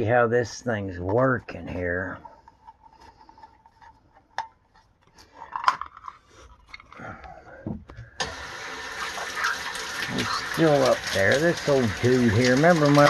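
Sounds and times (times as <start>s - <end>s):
water rushing: 8.2s - 13.0s.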